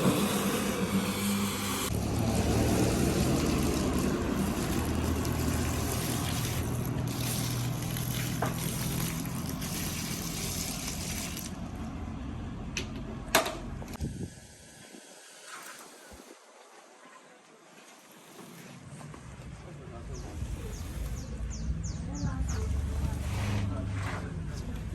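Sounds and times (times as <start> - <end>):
water spray hissing: 0.0 - 11.6
pressure washer motor hum: 0.0 - 12.0.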